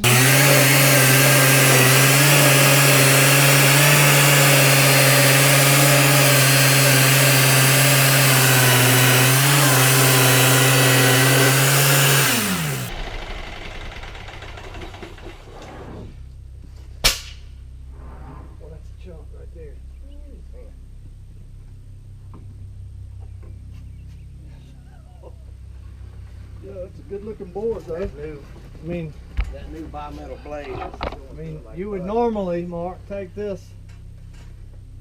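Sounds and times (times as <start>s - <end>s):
band saw blade cutting log: 0.0s - 14.0s
small gas engine running: 0.0s - 15.8s.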